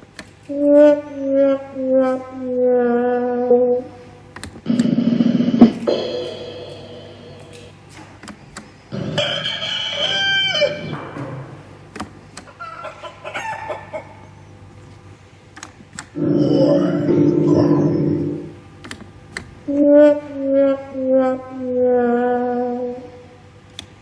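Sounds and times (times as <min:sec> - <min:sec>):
rooster crowing: 0:08.9 - 0:11.1.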